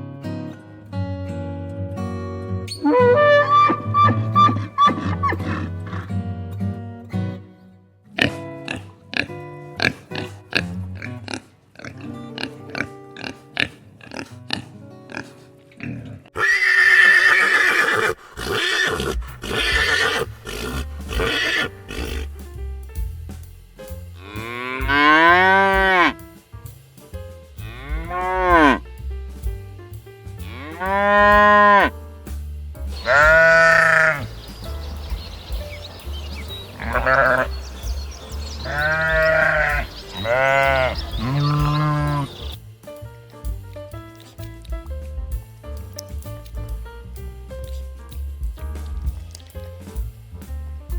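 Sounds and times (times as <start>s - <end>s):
background music: 2.6s - 17.2s, 18.4s - 50.9s
sheep bleating: 15.9s - 22.3s, 33.0s - 34.3s, 36.7s - 42.5s.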